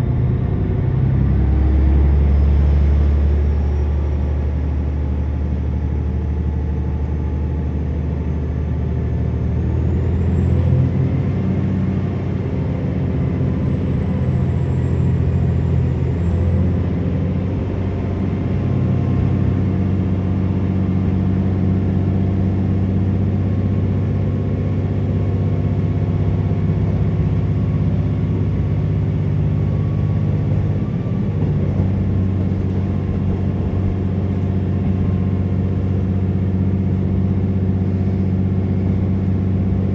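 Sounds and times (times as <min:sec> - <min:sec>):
diesel railcar engine drone: 0:00.0 - 0:39.9
rail running noise: 0:00.0 - 0:39.9.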